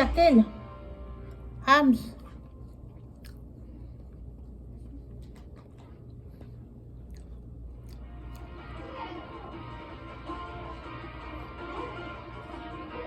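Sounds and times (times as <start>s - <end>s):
steady low hum: 0.0s - 13.0s
chewing food: 2.2s - 8.7s.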